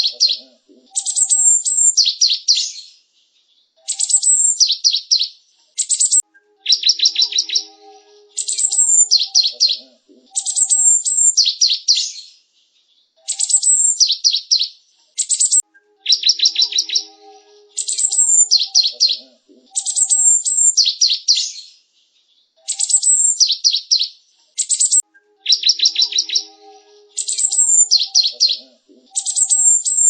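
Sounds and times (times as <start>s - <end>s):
bird singing sharp high notes: 5.9s - 11.8s, 15.3s - 21.2s, 24.7s - 30.0s.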